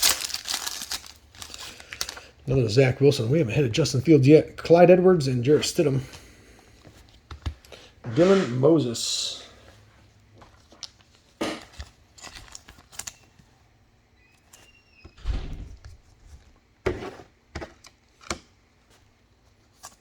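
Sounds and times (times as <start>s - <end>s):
cards tapping and rustling: 0.0s - 2.2s.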